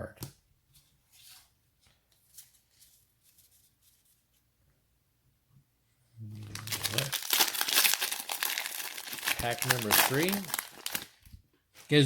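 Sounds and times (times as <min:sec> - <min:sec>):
rustling of cards: 0:00.7 - 0:04.4, 0:06.4 - 0:12.0
plastic wrapper crinkling: 0:06.4 - 0:11.9.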